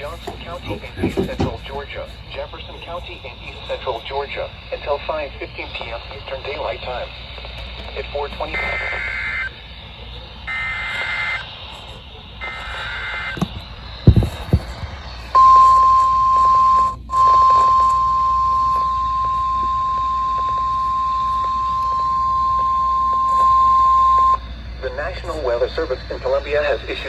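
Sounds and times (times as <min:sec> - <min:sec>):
steady high alarm tone: 0:08.2 - 0:27.0
warbling data tones: 0:08.4 - 0:27.0.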